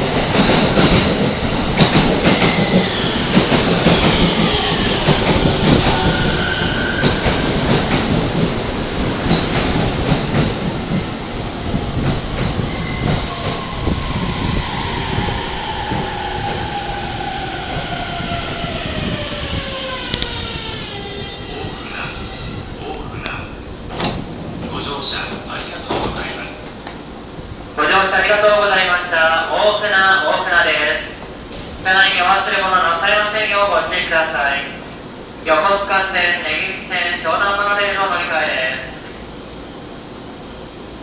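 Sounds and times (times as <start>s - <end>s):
train wheels clattering: 0.0s - 27.5s
train motor whine: 1.4s - 23.1s
wheels squealing: 11.4s - 23.7s.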